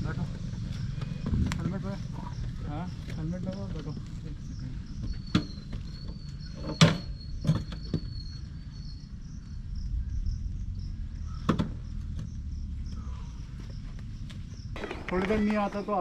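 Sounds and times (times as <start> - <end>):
low rumble: 0.0 - 4.9, 9.2 - 13.6
insects chirping: 0.0 - 16.0.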